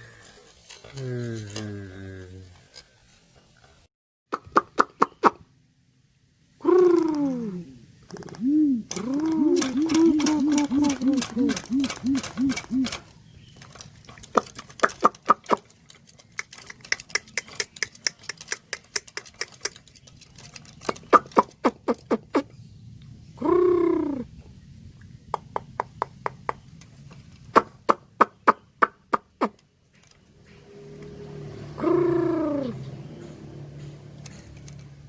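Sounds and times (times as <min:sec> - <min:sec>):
pigeon deep coo: 0:06.6 - 0:13.1, 0:23.4 - 0:24.4, 0:31.3 - 0:33.3
rapid sharp clicks: 0:08.1 - 0:22.4.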